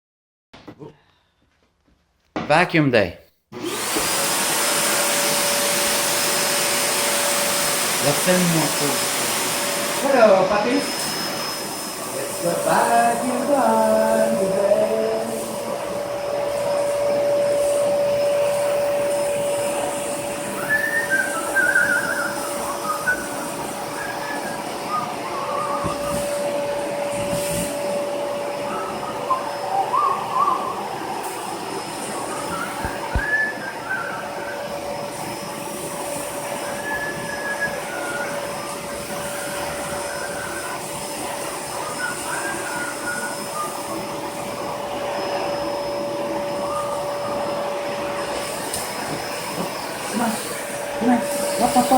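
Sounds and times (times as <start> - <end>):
vacuum cleaner motor whine: 3.6 - 51.9
wavering whistle tones: 15.9 - 31.1, 32.0 - 35.5, 36.4 - 51.9.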